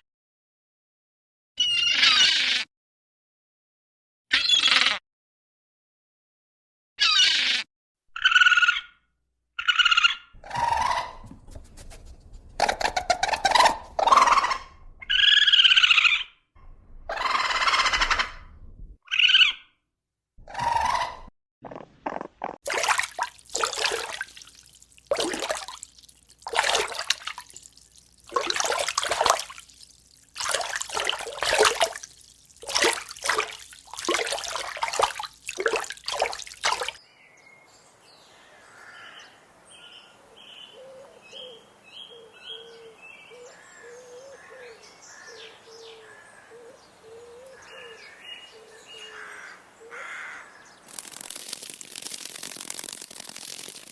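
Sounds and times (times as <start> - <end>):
animal calls bending in pitch: 10.4 - 15.5.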